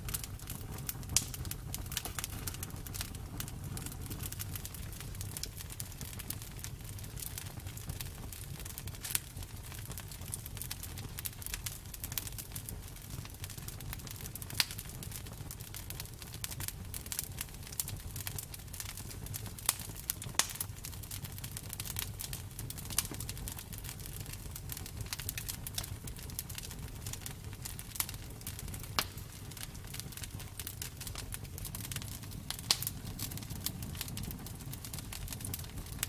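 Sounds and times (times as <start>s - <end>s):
burning wood crackling and popping: 0.0s - 36.0s
low rumble of flames: 0.0s - 36.0s.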